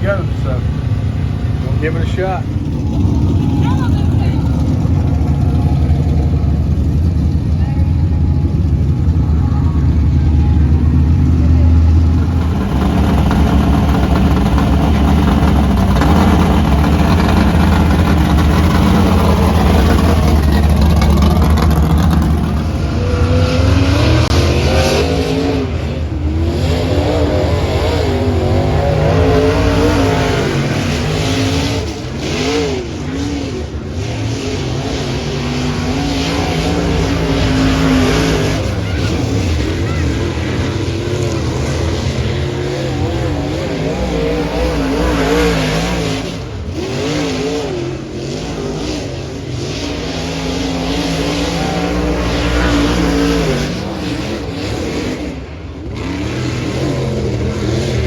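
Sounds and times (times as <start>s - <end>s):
race car engines revving: 0.0s - 58.0s.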